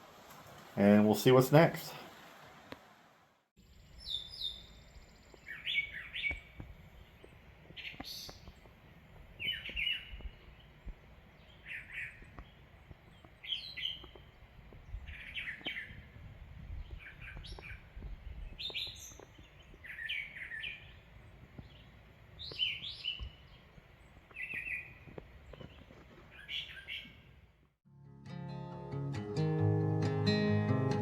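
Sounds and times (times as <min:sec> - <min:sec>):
songbirds chirping: 0:03.6 - 0:27.7.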